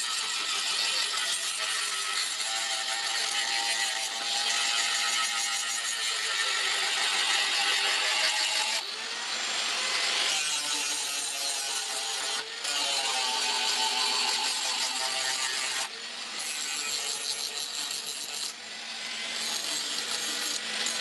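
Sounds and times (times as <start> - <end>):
power grinder on steel: 0.0 - 21.0.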